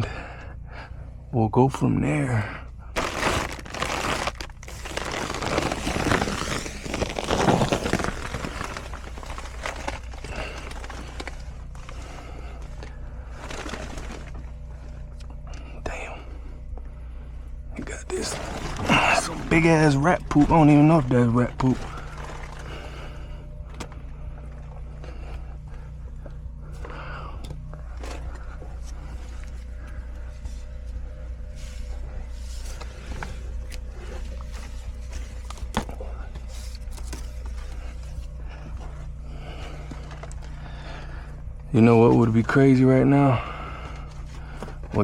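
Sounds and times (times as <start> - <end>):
low steady hum: 0.0 - 45.0
wire rustling and scraping: 3.0 - 12.0.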